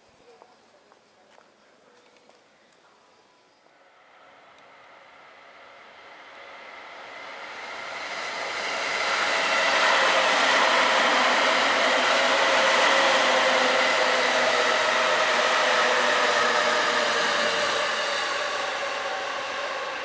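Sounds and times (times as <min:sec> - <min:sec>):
electric train passing: 0:03.7 - 0:20.0.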